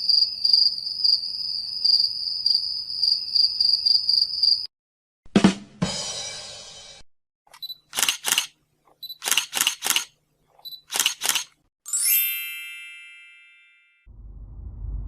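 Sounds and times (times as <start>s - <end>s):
sharp clicks: 7.5s - 8.5s, 9.2s - 10.2s, 10.8s - 11.6s.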